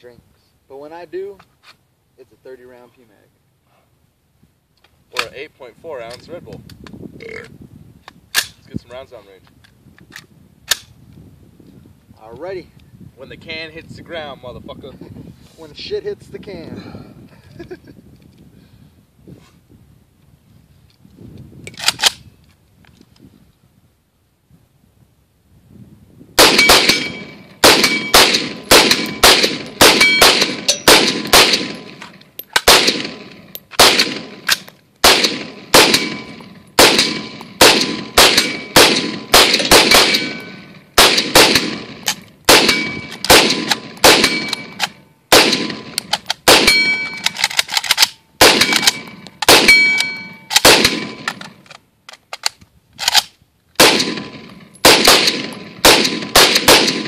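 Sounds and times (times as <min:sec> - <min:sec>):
rifle fire: 0:26.4 - 0:51.5, 0:53.0 - 0:57.0
metallic ping of target: 0:49.7 - 0:50.5.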